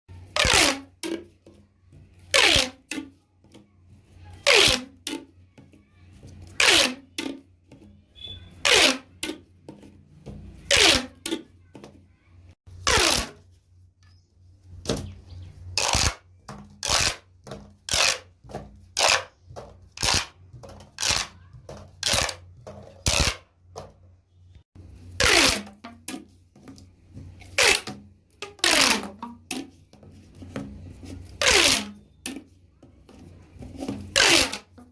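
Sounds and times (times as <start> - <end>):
plastic pop tubes zipping: 0.2 - 1.6, 2.2 - 3.2, 4.3 - 5.3, 6.4 - 11.5, 12.7 - 13.6, 15.7 - 24.0, 25.0 - 32.5, 33.1 - 34.9.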